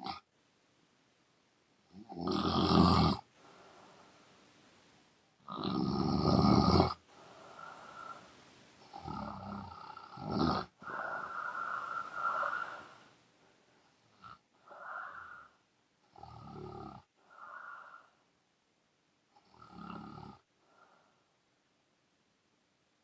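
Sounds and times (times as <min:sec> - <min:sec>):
woman snoring: 0:00.0 - 0:00.2, 0:02.0 - 0:03.9, 0:05.5 - 0:13.1, 0:14.0 - 0:18.2, 0:19.4 - 0:21.0
breaths: 0:03.2 - 0:04.9, 0:07.0 - 0:08.8, 0:10.7 - 0:15.7, 0:17.1 - 0:18.3, 0:20.4 - 0:21.4.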